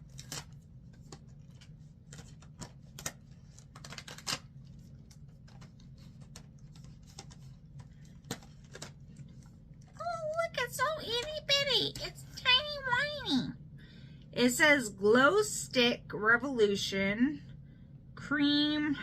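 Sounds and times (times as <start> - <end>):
packaging clicks and taps: 0.1 - 10.0.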